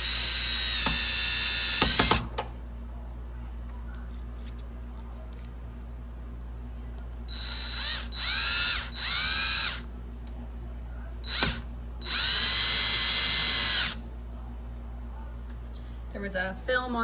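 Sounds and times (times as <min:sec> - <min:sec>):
cordless drill motor whine: 0:00.0 - 0:02.2, 0:07.3 - 0:09.9, 0:11.2 - 0:14.0.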